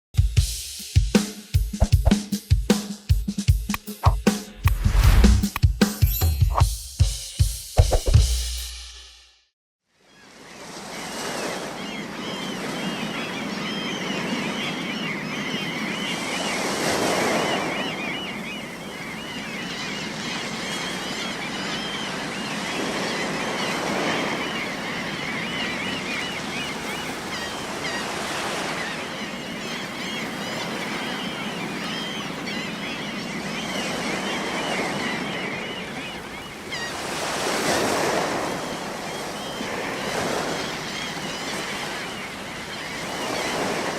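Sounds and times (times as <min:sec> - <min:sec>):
sea waves breaking on shore: 0:10.0 - 0:43.9
seagulls calling: 0:10.1 - 0:43.9.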